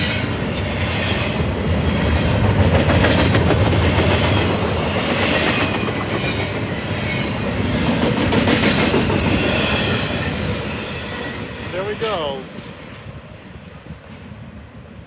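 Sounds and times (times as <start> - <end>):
freight train wheels clicking: 0.0 - 12.0
train rolling noise: 0.0 - 15.0.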